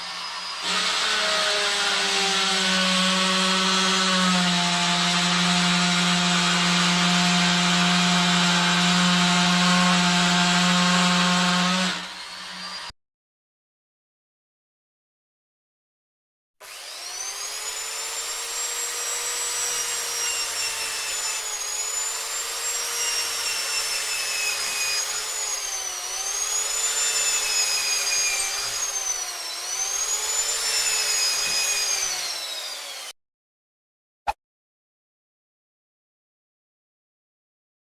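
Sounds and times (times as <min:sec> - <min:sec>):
electric power tool motor whining: 0:16.6 - 0:33.2.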